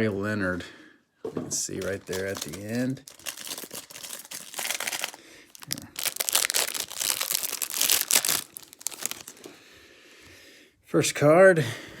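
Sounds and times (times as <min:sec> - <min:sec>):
plastic wrapper crinkling and tearing: 0:01.7 - 0:09.5.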